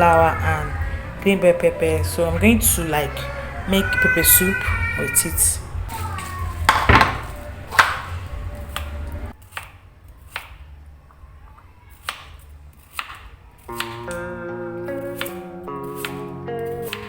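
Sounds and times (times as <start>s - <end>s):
knife chopping vegetables: 6.0s - 10.7s, 11.9s - 14.2s, 15.0s - 17.0s.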